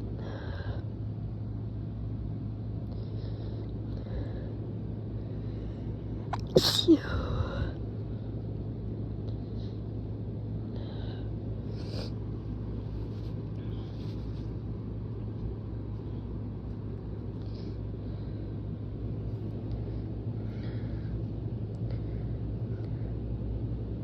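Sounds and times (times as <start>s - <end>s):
constant hum: 0.0s - 24.0s.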